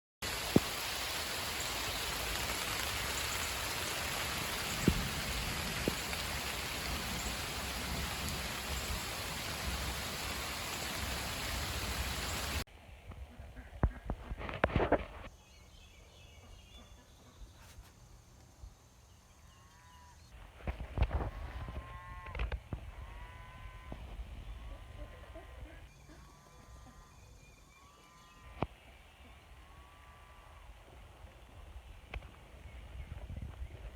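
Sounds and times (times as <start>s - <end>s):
steady rain falling: 0.2s - 12.7s.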